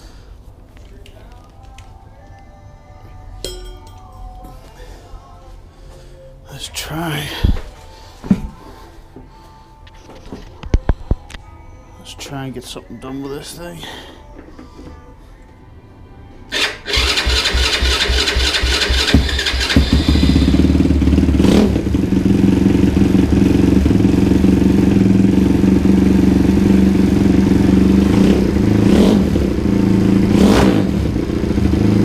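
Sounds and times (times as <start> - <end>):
engine starter cranking: 16.5 - 20.8
lawn tractor engine idling: 16.5 - 28.0.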